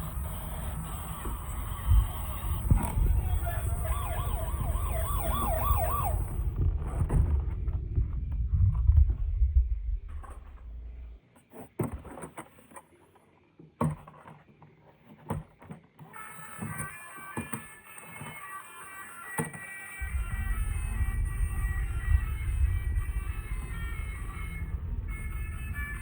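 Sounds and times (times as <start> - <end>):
toy siren wailing: 0.0 - 6.6, 16.1 - 26.0
low rumble: 0.0 - 11.2, 20.0 - 26.0.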